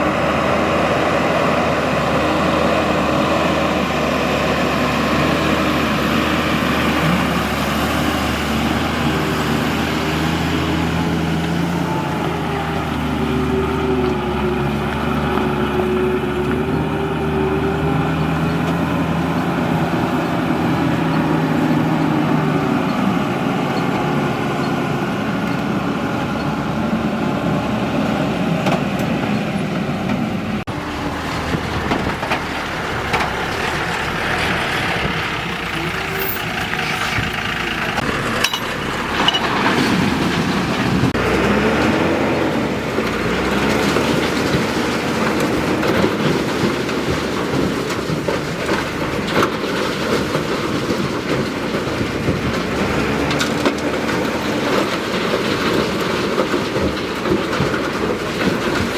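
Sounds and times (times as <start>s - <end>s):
diesel engine revving under load: 0.0s - 58.9s
metal clanks and knocks: 30.1s - 41.9s, 42.8s - 58.9s.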